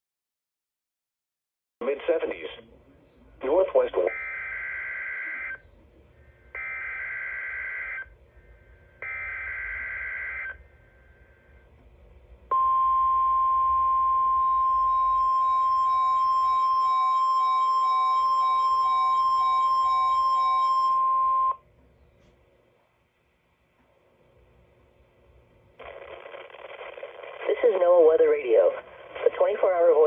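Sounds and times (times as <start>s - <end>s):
faint pulsing beep: 12.5s - 21.6s.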